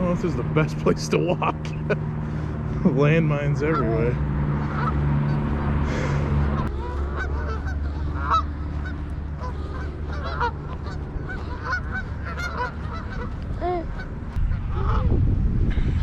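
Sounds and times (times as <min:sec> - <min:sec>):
geese honking: 0:03.6 - 0:15.1
low rumble: 0:04.2 - 0:16.0.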